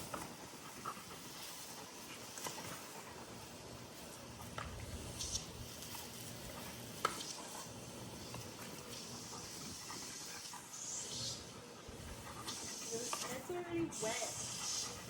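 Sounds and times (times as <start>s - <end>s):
garden hose spraying water: 0.0s - 15.0s.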